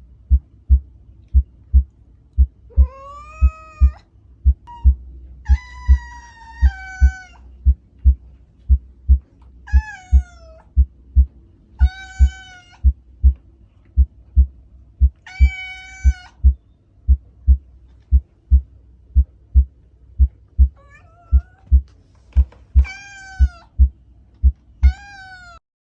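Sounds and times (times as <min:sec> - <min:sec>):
heartbeat thumps: 0:00.0 - 0:24.7
cat meowing: 0:02.7 - 0:07.5, 0:09.6 - 0:10.7, 0:11.8 - 0:12.9, 0:15.2 - 0:16.4, 0:20.7 - 0:21.8, 0:22.8 - 0:23.8, 0:24.8 - 0:25.6.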